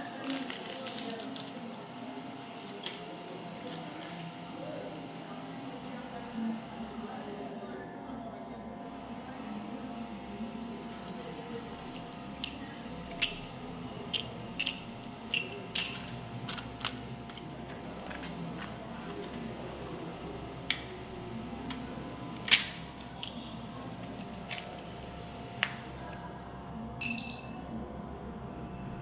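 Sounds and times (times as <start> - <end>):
packaging crinkling and clicking: 0.0 - 1.6, 11.8 - 19.6, 21.6 - 24.9.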